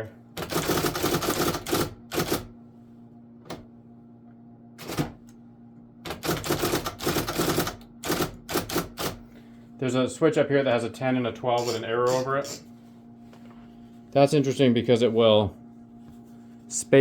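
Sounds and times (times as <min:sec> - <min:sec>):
typewriter motor hum: 0:00.4 - 0:02.5, 0:04.8 - 0:05.3, 0:06.0 - 0:09.2, 0:11.5 - 0:12.7.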